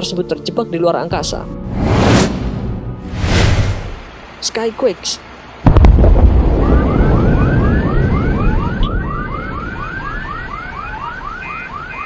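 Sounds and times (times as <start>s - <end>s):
deep rumble: 1.6s - 4.2s.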